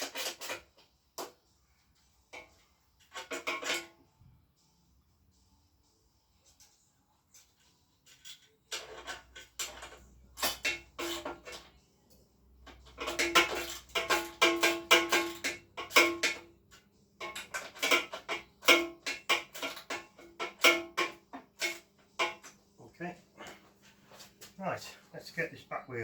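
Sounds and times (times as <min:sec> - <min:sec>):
metal tools clicking and clinking: 0:06.4 - 0:11.8, 0:12.6 - 0:22.7.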